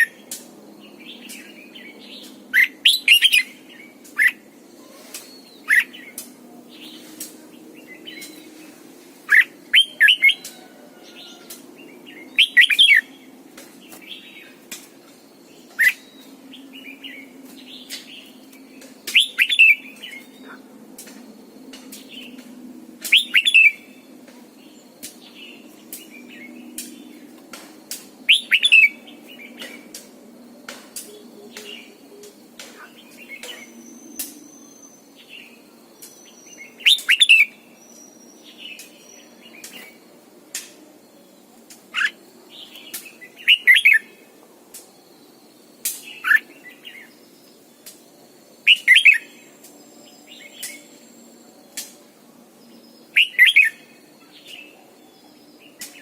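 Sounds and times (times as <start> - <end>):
bird singing whistled phrases: 19.1 - 19.8, 23.1 - 23.8, 28.3 - 29.0, 43.4 - 44.0, 48.7 - 49.3, 53.2 - 53.8.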